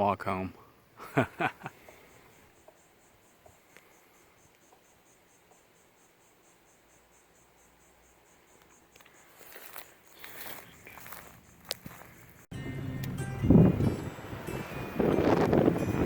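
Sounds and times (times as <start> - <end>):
insect chirring: 1.2 - 12.5.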